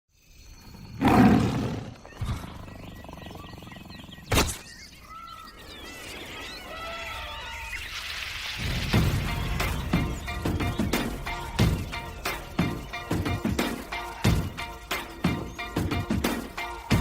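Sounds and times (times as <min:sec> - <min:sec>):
chirping squeaks: 0:00.4 - 0:08.0.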